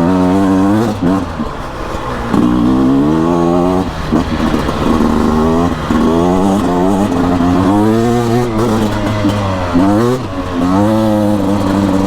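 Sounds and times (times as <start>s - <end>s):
two-stroke engine accelerating: 0.0s - 12.0s.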